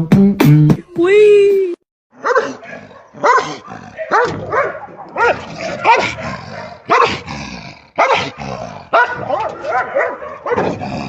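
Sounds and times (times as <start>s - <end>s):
dog barking: 2.2s - 7.3s, 8.0s - 10.9s.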